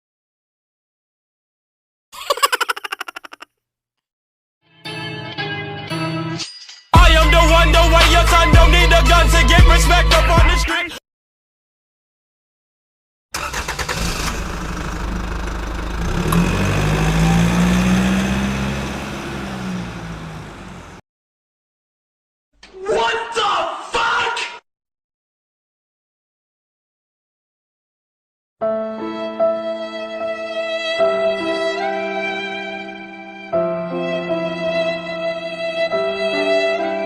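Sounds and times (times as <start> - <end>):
car engine: 13.4 - 21.0.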